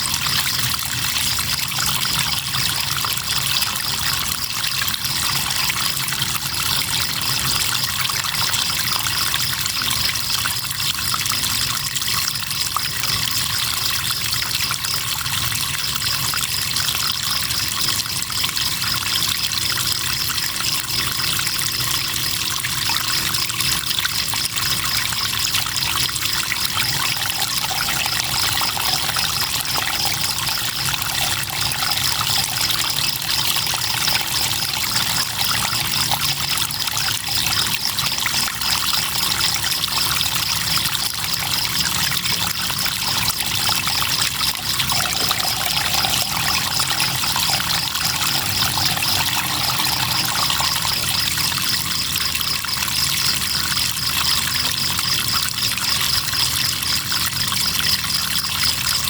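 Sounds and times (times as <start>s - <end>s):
crickets chirping: 0.0s - 59.0s
river water flowing: 25.7s - 55.0s.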